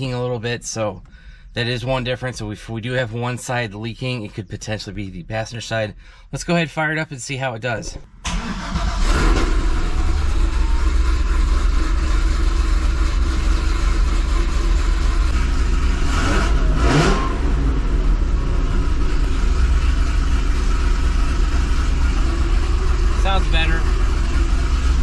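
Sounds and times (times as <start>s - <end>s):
car engine running: 8.6s - 25.0s.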